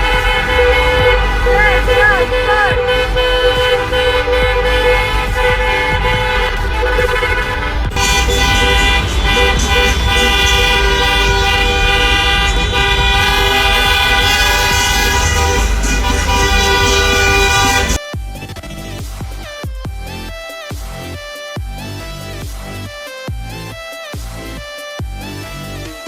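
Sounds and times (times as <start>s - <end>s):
car horns blaring: 0.0s - 18.0s
traffic rumble: 0.0s - 18.0s.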